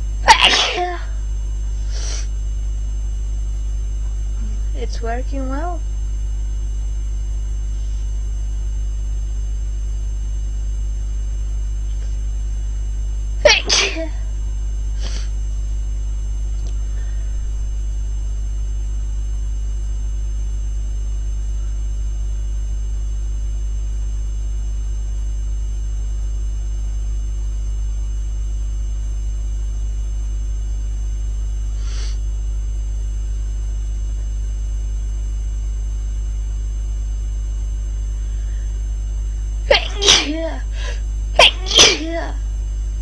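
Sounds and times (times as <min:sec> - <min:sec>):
steady low hum: 0:00.0 - 0:43.0
faint rustle or sniff: 0:07.7 - 0:08.2, 0:15.0 - 0:15.4, 0:31.8 - 0:32.2.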